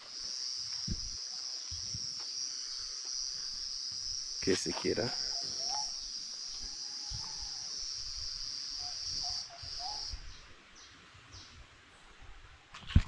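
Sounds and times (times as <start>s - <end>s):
cicada buzzing: 0.0s - 10.4s.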